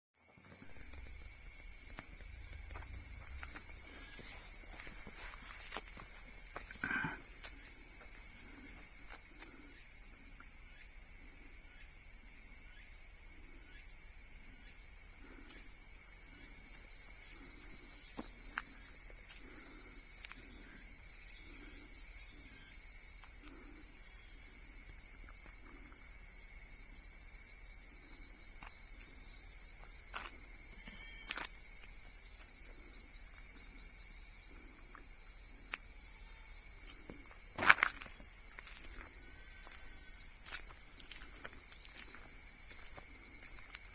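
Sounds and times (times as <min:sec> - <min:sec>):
insects chorus: 0:00.2 - 0:43.9
faint low throb: 0:00.6 - 0:05.6.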